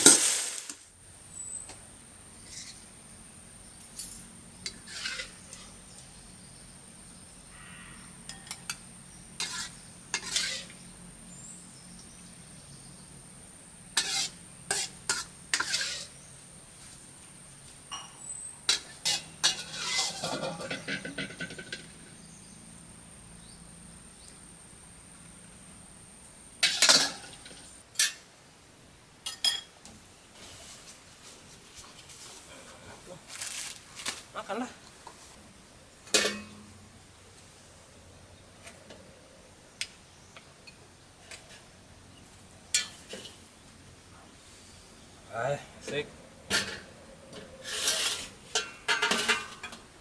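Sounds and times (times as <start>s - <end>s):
metal utensils clinking on dishes: 0.0s - 0.8s, 47.7s - 49.8s.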